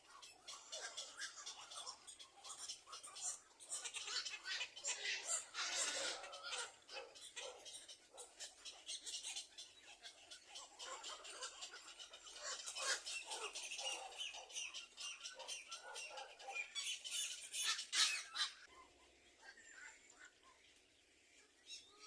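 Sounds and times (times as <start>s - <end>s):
birds squawking: 0.0s - 18.7s.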